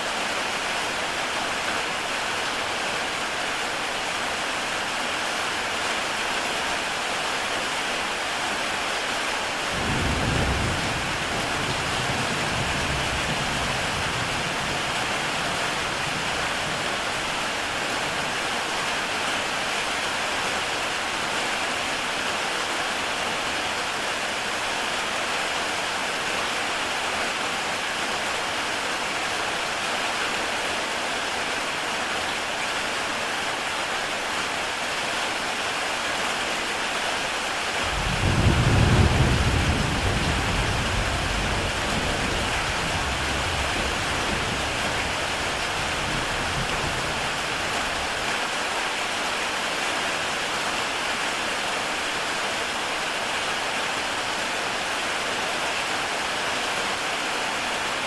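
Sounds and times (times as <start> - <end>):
heavy rain on a tile roof: 0.0 - 58.0
thunder rumble: 37.9 - 47.3.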